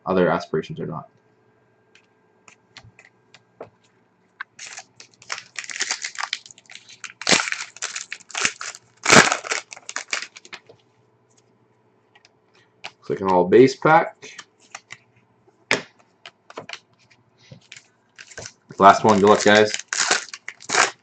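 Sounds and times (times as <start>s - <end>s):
wrapper tearing and crinkling: 4.6s - 10.6s, 17.6s - 21.0s.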